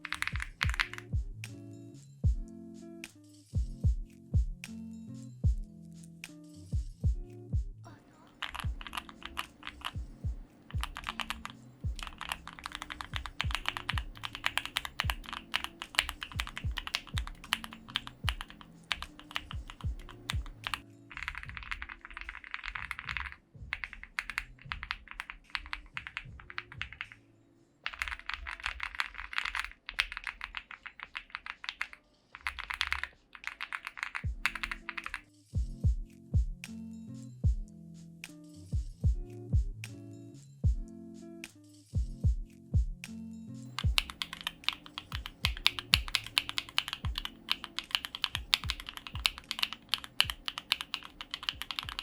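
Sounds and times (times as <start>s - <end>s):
mechanical keyboard typing: 0.0s - 1.1s, 8.2s - 27.2s, 27.8s - 35.2s, 43.8s - 52.0s
background music with bass: 0.4s - 7.9s, 35.5s - 44.0s.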